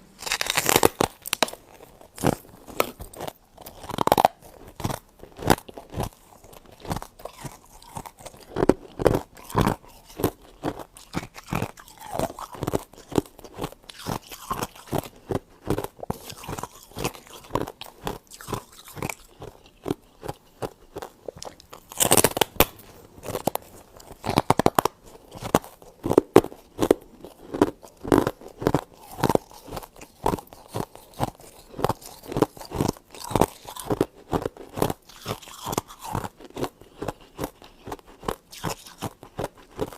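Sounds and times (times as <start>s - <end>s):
frost being chewed crunching: 0.1s - 39.9s.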